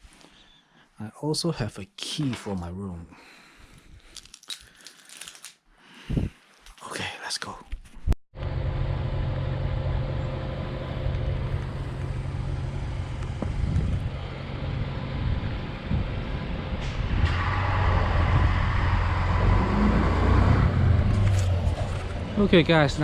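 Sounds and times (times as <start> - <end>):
car engine hum: 8.4 - 23.0
road noise: 8.4 - 23.0.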